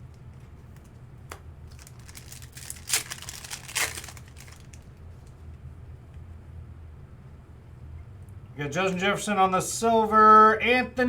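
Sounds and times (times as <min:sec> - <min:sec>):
low steady hum: 0:00.0 - 0:11.0
plastic wrapper crinkling: 0:01.7 - 0:05.0.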